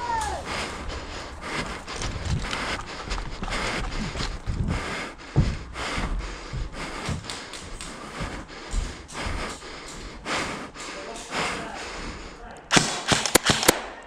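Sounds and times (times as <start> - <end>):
footfalls and thuds: 2.0 - 7.4.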